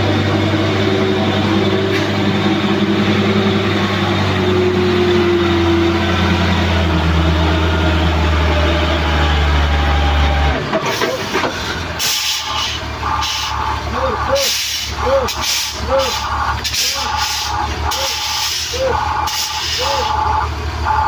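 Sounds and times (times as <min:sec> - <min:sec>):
diesel engine running: 0:00.0 - 0:21.0
air brake hiss: 0:14.5 - 0:18.7.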